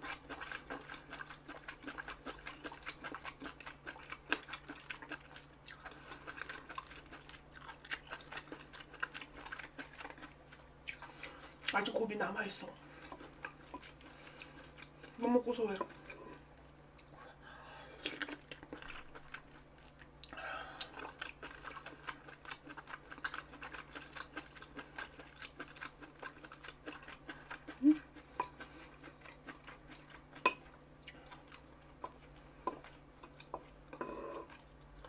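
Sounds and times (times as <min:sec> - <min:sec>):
person chewing: 0:00.0 - 0:12.0, 0:12.8 - 0:35.0.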